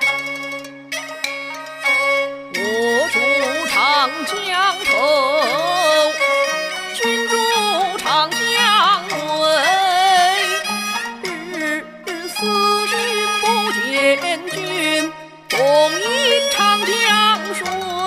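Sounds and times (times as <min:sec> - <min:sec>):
sliding wavering melody: 0:00.0 - 0:05.9.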